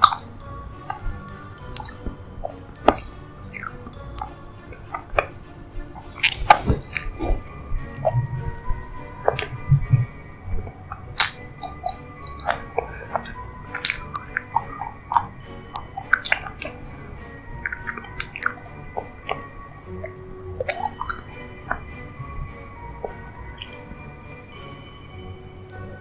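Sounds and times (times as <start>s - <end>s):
chewing and wet mouth sounds: 0.0s - 0.3s, 0.9s - 5.3s, 6.0s - 9.9s, 10.6s - 17.0s, 17.6s - 21.8s
background music: 0.0s - 26.0s.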